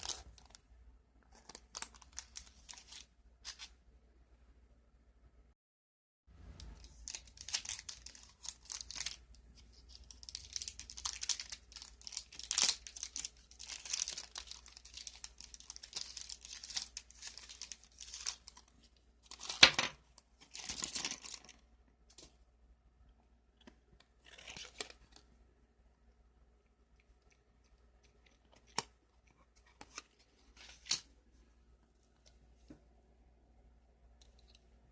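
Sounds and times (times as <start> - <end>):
plastic packaging crinkling: 0.0 - 0.6, 1.3 - 3.7, 6.6 - 21.6.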